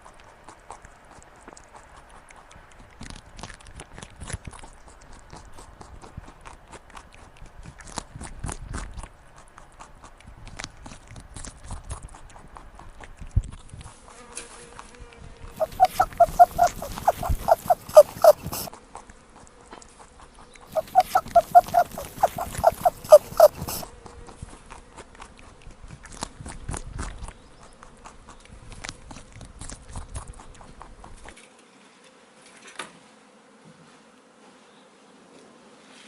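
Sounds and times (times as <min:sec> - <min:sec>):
animal calling rapidly: 0:15.6 - 0:18.7, 0:20.7 - 0:23.8
rustling: 0:15.6 - 0:18.7, 0:20.7 - 0:23.8.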